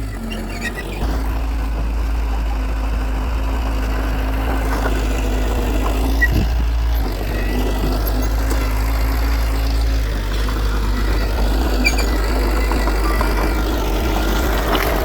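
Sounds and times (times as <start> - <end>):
heavy diesel engine running: 0.0 - 15.0.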